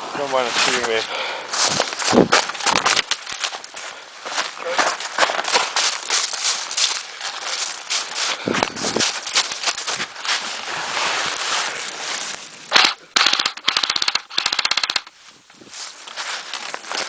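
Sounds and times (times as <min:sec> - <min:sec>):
airsoft gun firing: 0:12.7 - 0:15.1.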